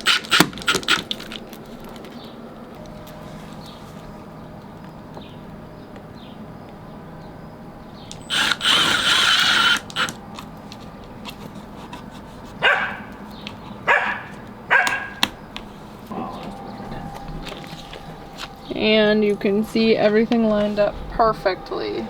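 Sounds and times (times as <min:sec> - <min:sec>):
dog barking: 0:12.6 - 0:13.2, 0:13.8 - 0:15.2.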